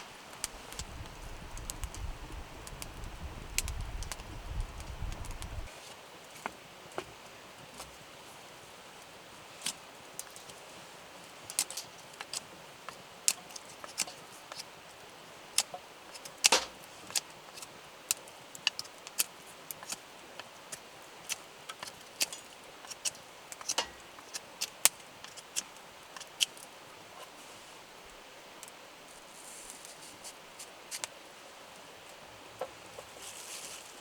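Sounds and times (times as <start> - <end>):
campfire crackling: 0.0 - 5.7, 13.5 - 26.7
faint steady hiss: 0.0 - 34.0.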